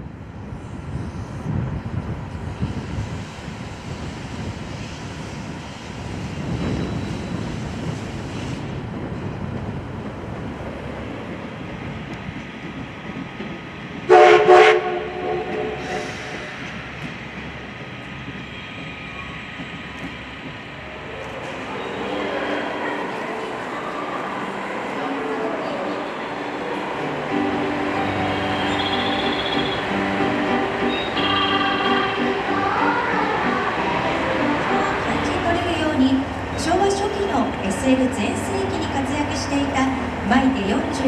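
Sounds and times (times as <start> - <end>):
train rumbling: 0.0 - 41.0
train horn blast: 14.1 - 16.4, 28.3 - 32.2.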